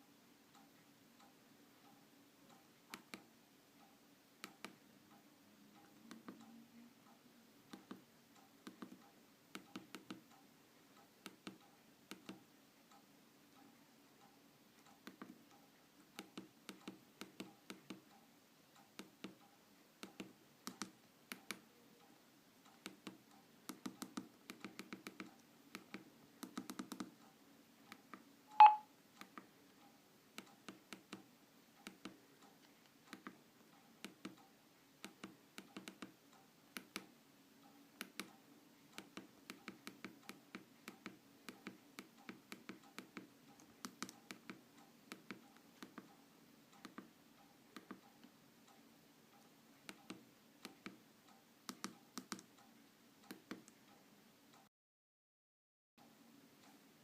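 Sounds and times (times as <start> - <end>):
short loud phone beep: 28.5 - 28.9
mobile phone clicks and taps: 28.6 - 29.4.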